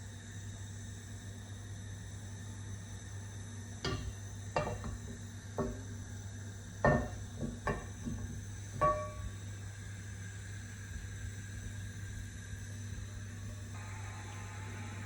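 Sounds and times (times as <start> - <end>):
steady low hum: 0.0 - 15.0
kitchenware knocking and clinking: 3.9 - 5.8, 6.9 - 9.3.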